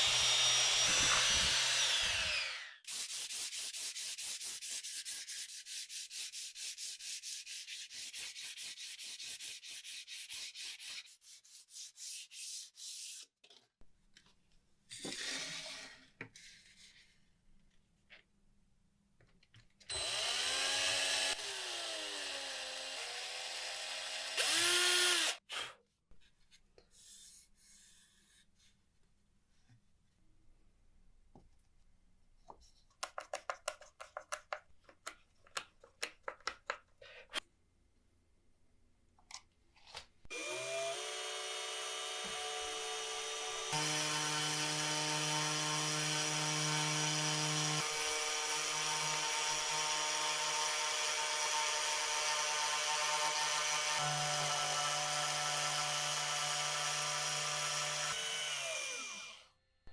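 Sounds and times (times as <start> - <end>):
small power tool whining: 0.0 - 2.8, 19.9 - 25.4, 40.3 - 59.5
sandpaper rubbed by hand: 2.9 - 13.3.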